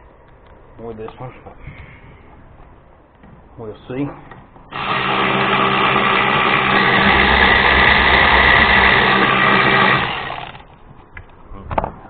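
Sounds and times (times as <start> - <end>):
electric ratchet motor running: 4.7 - 10.7.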